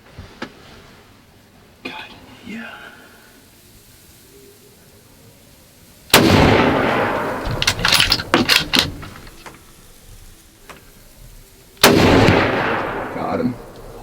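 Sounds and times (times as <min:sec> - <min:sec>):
rifle shot with echo: 0:06.1 - 0:09.1, 0:11.8 - 0:14.0
sharp clicks and knocks: 0:07.1 - 0:09.6.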